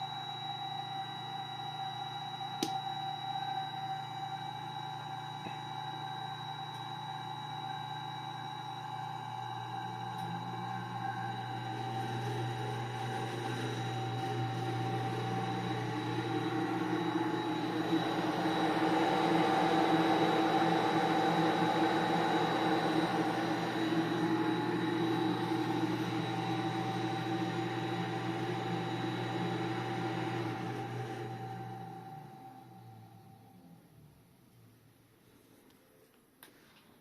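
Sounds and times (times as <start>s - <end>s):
rotary dryer motor humming: 0.0s - 33.8s
whirring rushing noise: 15.9s - 32.4s.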